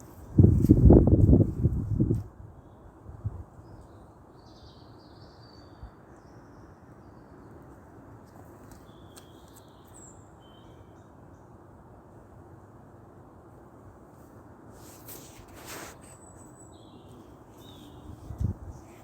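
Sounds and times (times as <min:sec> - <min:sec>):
outdoor background noise: 0:00.0 - 0:19.0
faint bird chirps: 0:15.7 - 0:19.0.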